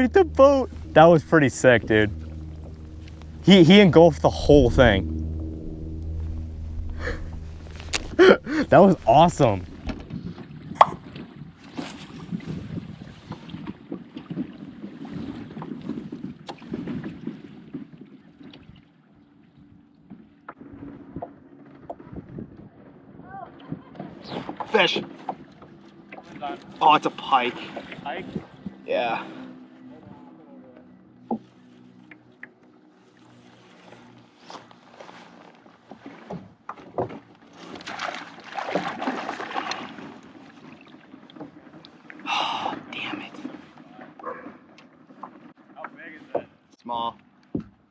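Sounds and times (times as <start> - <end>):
wind on microphone: 0.0 - 17.4, 20.6 - 24.5
water slapping hull: 0.0 - 30.2, 30.9 - 47.9
gear knocking against boat: 12.3 - 18.7.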